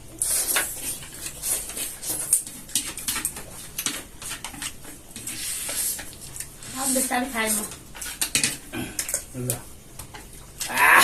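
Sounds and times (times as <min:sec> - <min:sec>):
utensils clicking on plate: 0:07.5 - 0:09.6.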